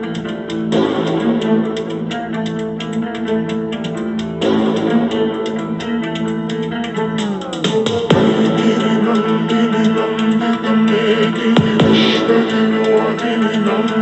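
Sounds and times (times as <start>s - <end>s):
guitar instrumental music: 0.0s - 14.0s.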